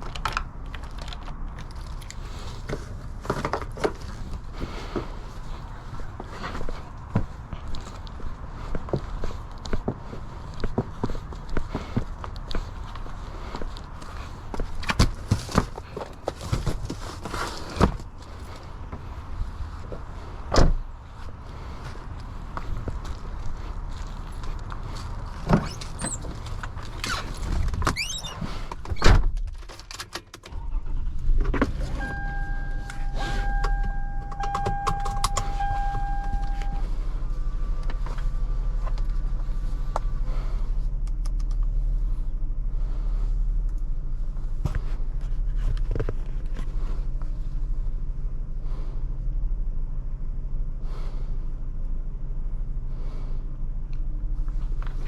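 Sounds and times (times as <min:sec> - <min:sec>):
clicks: 0:31.5 - 0:36.8
high steady whine: 0:31.6 - 0:42.0
computer fans humming: 0:31.6 - 0:42.4.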